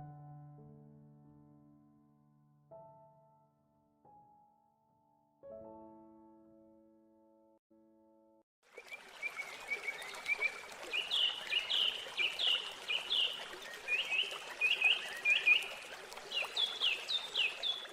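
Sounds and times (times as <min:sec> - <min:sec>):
songbirds chirping: 0:08.9 - 0:17.9.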